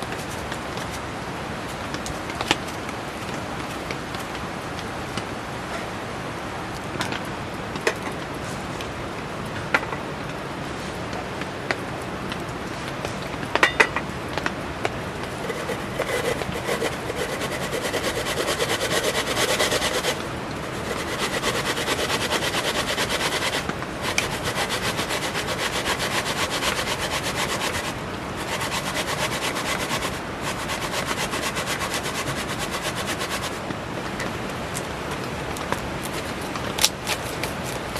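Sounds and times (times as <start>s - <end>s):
hand saw cutting wood: 15.2s - 33.7s, 36.0s - 37.9s.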